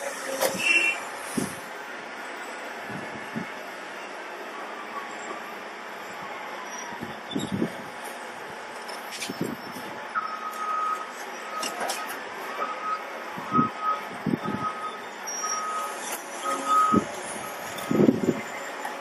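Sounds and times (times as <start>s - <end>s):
heavy machine running: 0.0s - 19.0s
back-up alarm beeping: 9.6s - 19.0s.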